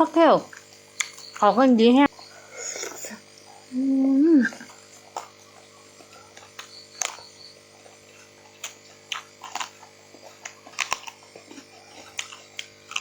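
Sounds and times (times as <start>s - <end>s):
steady low hum: 0.0s - 13.0s
person chewing clams: 4.6s - 13.0s.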